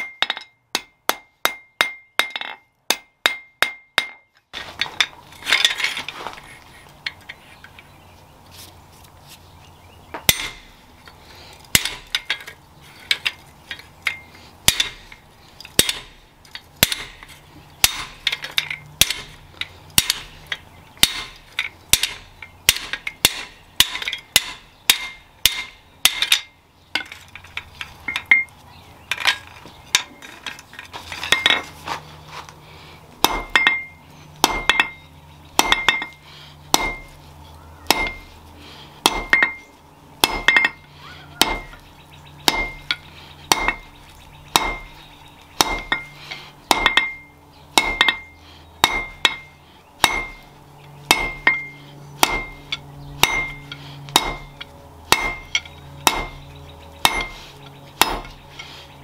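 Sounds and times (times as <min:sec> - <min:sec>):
hammer striking steel on anvil: 0:00.0 - 0:04.4, 0:10.2 - 0:10.7, 0:11.8 - 0:12.5, 0:13.1 - 0:15.1, 0:15.8 - 0:16.2, 0:16.8 - 0:19.4, 0:20.0 - 0:27.2, 0:28.1 - 0:28.5, 0:33.2 - 0:37.2, 0:37.9 - 0:38.3, 0:39.0 - 0:39.6, 0:40.2 - 0:41.8, 0:42.5 - 0:43.9, 0:44.5 - 0:45.0, 0:45.6 - 0:50.5, 0:51.1 - 0:56.4, 0:57.0 - 0:57.4, 0:58.0 - 0:58.4.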